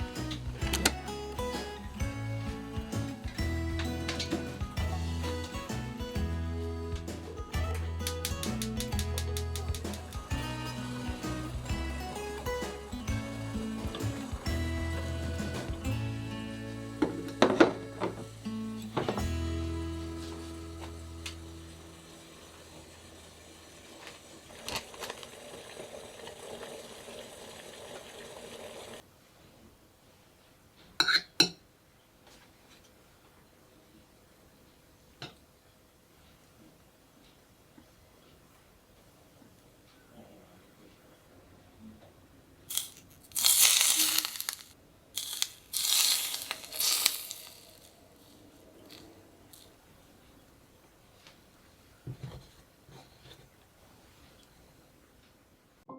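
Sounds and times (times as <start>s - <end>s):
low simmering hiss: 0.0s - 55.9s
rustling crinkling noise: 42.7s - 55.4s.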